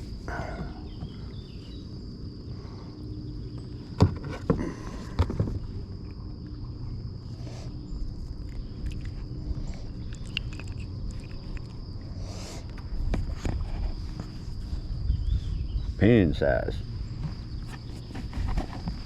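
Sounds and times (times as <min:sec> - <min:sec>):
low rumble of wind or water: 0:00.0 - 0:19.0
sharp knocks and clunks: 0:03.9 - 0:05.6
small ticks: 0:07.6 - 0:13.6.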